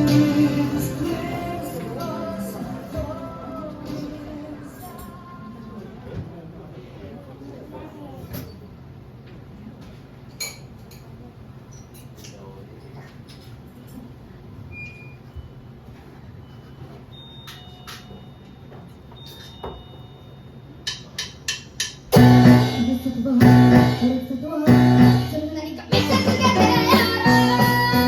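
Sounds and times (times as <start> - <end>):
heavy bass line: 0.0 - 4.0, 22.2 - 28.0
drums: 0.0 - 4.8, 20.9 - 28.0
keyboard chords: 0.0 - 4.8, 22.2 - 28.0.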